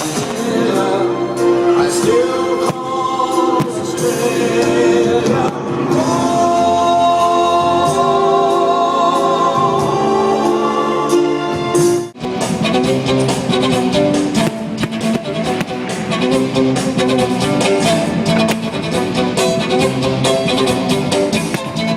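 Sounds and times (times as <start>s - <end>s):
voices singing long notes: 0.0s - 11.7s
sustained musical accompaniment: 0.0s - 21.9s.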